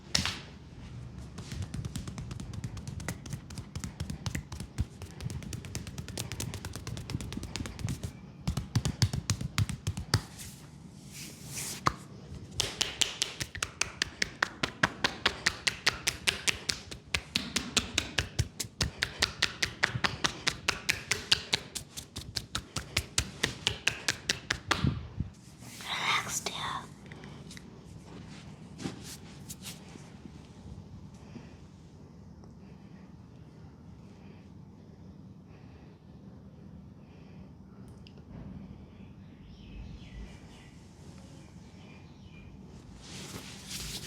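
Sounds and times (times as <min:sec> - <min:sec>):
patting and rubbing on skin: 0:01.1 - 0:24.9
sharp massage taps: 0:01.2 - 0:10.6, 0:11.8 - 0:25.0.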